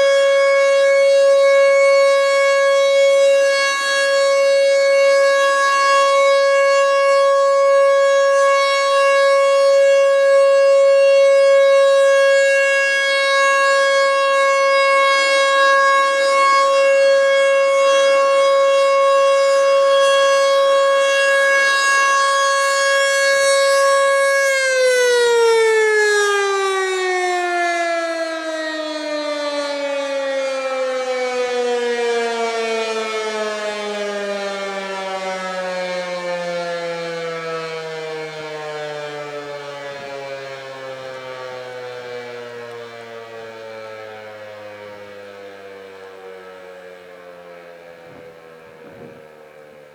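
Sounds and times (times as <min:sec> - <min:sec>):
warning siren: 0:00.0 - 0:49.9.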